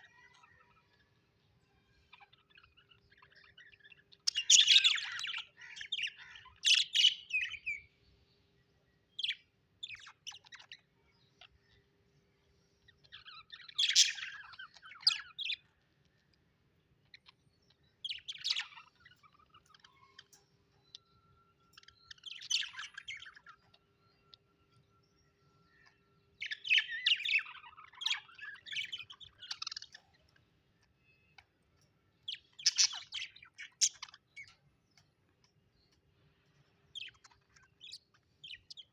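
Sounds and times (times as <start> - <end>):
budgerigars chirping: 2.1 - 7.8, 9.2 - 11.7, 12.9 - 15.8, 17.0 - 20.4, 21.7 - 24.4, 25.7 - 31.5, 32.1 - 34.6, 36.9 - 38.9.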